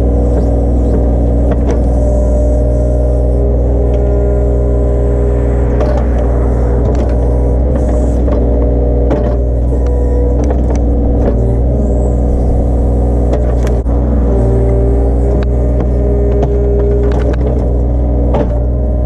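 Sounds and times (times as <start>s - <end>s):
excavator diesel engine running: 0.0s - 19.0s
knocks and cracks of digging: 0.3s - 2.5s, 5.8s - 11.6s, 13.2s - 18.8s.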